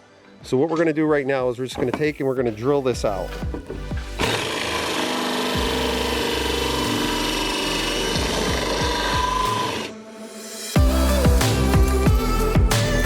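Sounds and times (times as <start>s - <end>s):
power drill boring: 3.3s - 10.0s.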